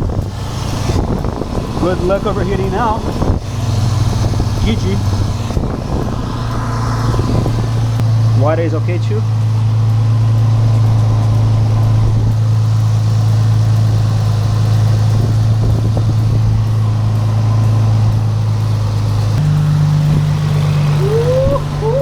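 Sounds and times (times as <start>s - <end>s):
car engine humming: 0.0s - 22.0s.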